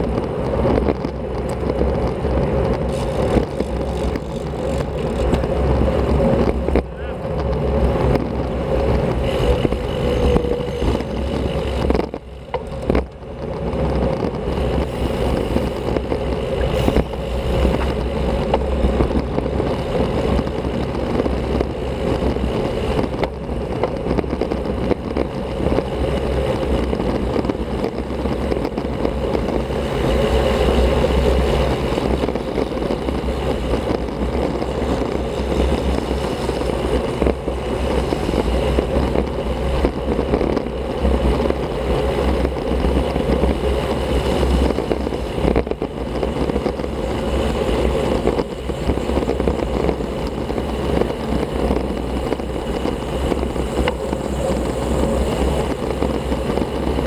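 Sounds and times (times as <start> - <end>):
wind rushing over microphone: 0.0 - 57.0.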